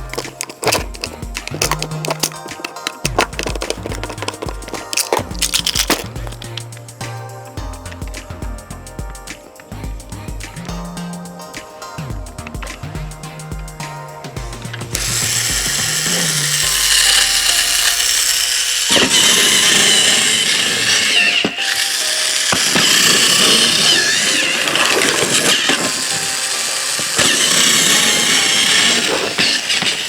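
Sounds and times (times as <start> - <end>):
music: 0.0 - 30.0
small motor whirring: 15.0 - 30.0.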